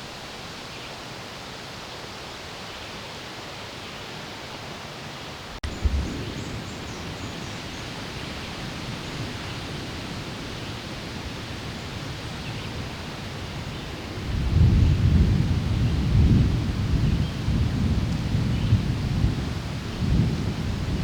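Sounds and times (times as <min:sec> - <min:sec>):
storm wind blowing: 0:05.6 - 0:21.0.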